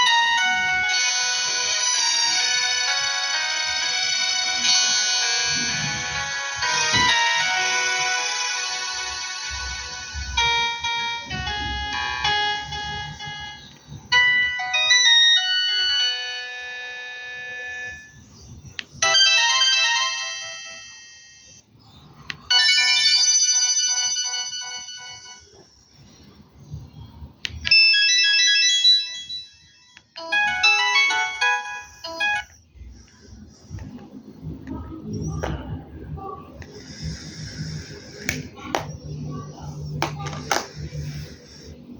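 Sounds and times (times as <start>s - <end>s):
phone ringtone melodies: 0.0s - 18.2s, 19.0s - 21.6s, 22.5s - 25.6s, 27.7s - 32.8s.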